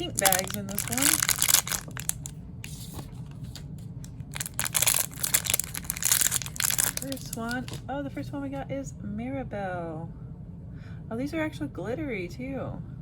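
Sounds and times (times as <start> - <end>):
plastic bags crinkling and tearing: 0.0 - 7.8.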